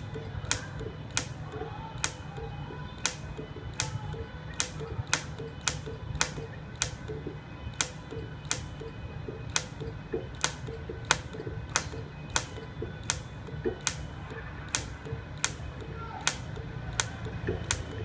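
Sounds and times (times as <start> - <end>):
welder clicking: 0.0 - 18.0
welder humming: 0.0 - 18.0.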